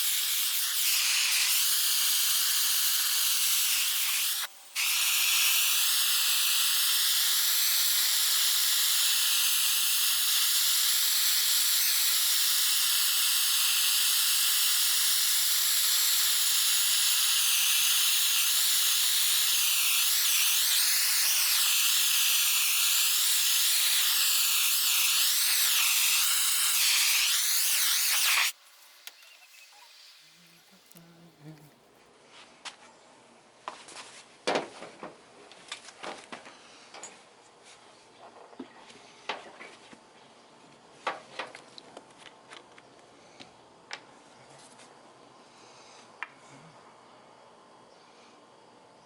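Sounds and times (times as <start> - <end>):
gas torch flame hissing: 0.0 - 31.0.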